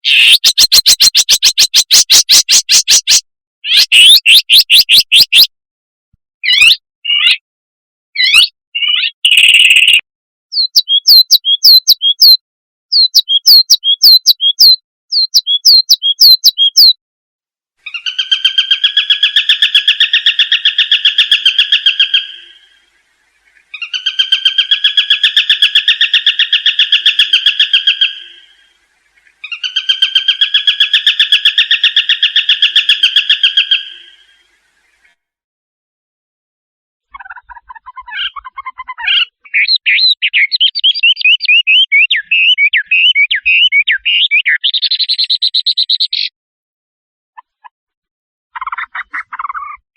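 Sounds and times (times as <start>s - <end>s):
bird whistled notes: 0.0s - 5.5s, 8.2s - 17.0s, 39.1s - 46.3s
bird pulsed trills: 9.1s - 17.0s.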